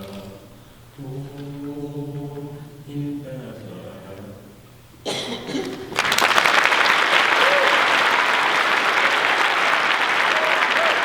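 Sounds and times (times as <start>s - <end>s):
audience applause: 5.9s - 11.0s.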